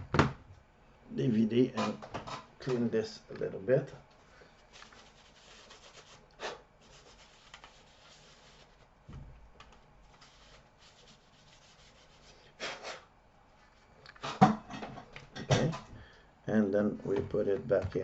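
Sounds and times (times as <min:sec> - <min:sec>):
faint rubbing and wiping: 0:04.2 - 0:09.0, 0:09.7 - 0:13.9.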